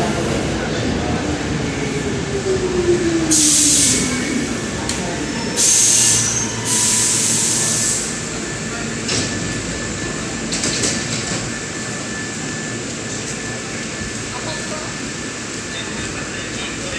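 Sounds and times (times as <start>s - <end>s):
train equipment hum: 0.0s - 16.9s
loud air hiss: 3.3s - 4.3s, 5.6s - 8.4s.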